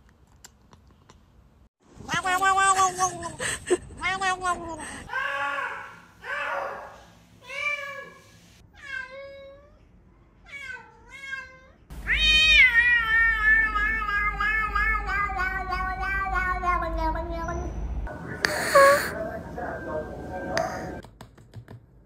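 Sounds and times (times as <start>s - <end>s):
cat meowing: 10.4s - 17.6s
low hum: 11.9s - 21.0s.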